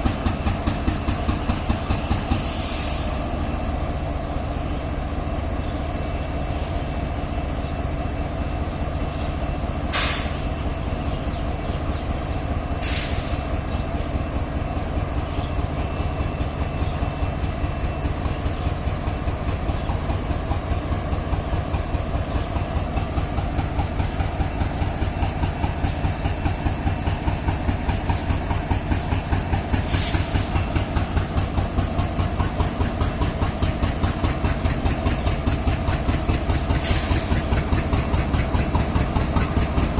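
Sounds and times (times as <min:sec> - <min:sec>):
locomotive engine idling: 0:00.0 - 0:39.9
short air hisses: 0:02.3 - 0:03.2, 0:09.9 - 0:10.5, 0:12.8 - 0:13.4, 0:29.8 - 0:30.5, 0:36.8 - 0:37.3.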